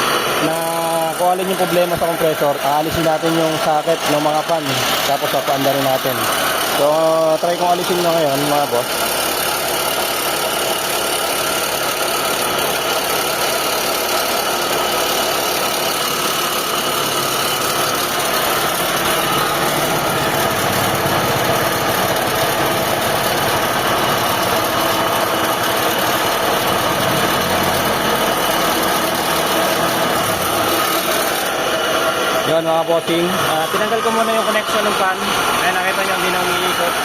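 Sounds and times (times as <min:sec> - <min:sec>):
car engine idling: 0:00.0 - 0:37.0
grinding whir of compressor pulley: 0:00.0 - 0:37.0.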